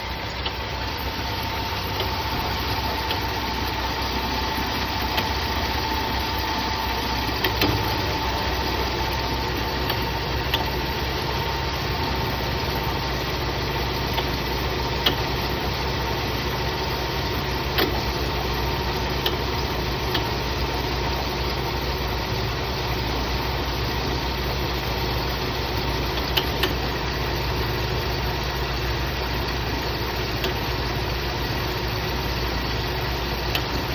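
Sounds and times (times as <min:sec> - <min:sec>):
air conditioning compressor running: 0:00.0 - 0:33.9
car engine idling: 0:00.0 - 0:33.9.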